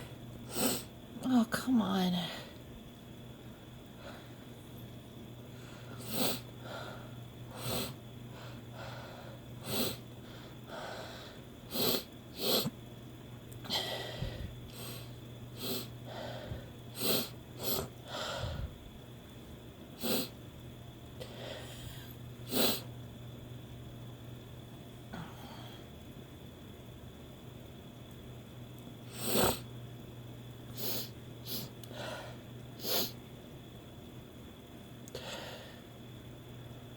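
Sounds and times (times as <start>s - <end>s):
woman sniffing snorting and sneezing: 0.5s - 0.9s, 6.0s - 6.5s, 7.5s - 8.0s, 9.6s - 10.0s, 11.7s - 12.8s, 14.8s - 15.9s, 16.9s - 17.9s, 20.0s - 20.4s, 22.4s - 22.9s, 29.1s - 29.7s, 30.7s - 31.8s, 32.8s - 33.2s.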